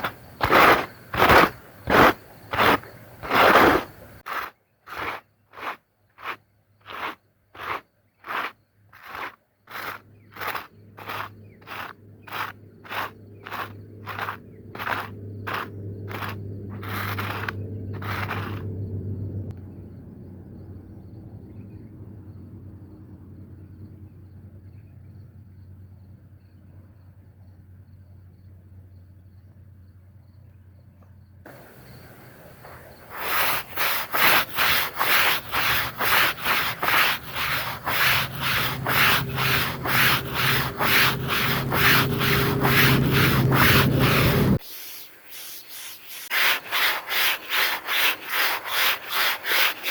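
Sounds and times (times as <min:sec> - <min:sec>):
wet rug scrubbed by hand: 0:00.0 - 0:18.7, 0:31.5 - 0:49.9
steady low hum: 0:31.5 - 0:33.8, 0:35.4 - 0:44.6.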